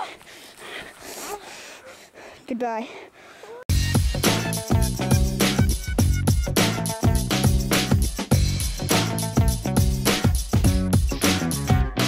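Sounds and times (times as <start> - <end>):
funk music with drums: 3.7 - 12.0.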